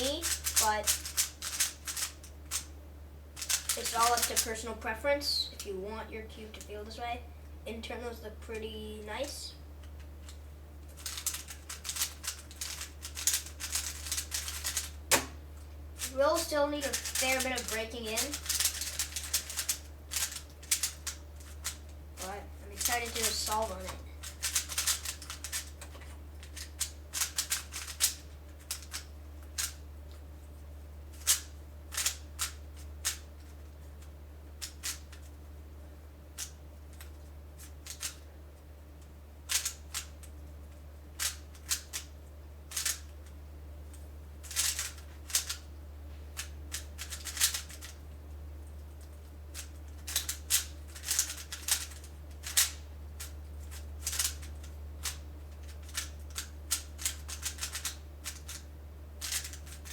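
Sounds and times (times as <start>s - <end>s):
speed cube layers clicking: 0.0s - 2.6s, 3.4s - 4.6s, 11.0s - 14.9s, 16.0s - 21.8s, 22.8s - 25.7s, 26.5s - 29.8s, 39.5s - 40.1s, 44.4s - 45.6s, 46.4s - 47.9s, 49.6s - 52.8s, 54.0s - 55.2s, 55.8s - 58.6s, 59.2s - 59.9s
steady low hum: 0.0s - 59.9s.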